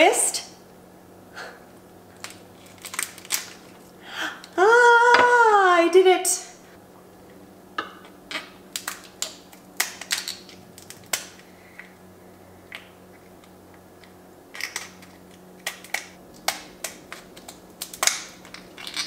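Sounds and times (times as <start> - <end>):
lobster shell cracking: 2.2 - 3.8, 8.3 - 11.5, 12.7 - 19.0.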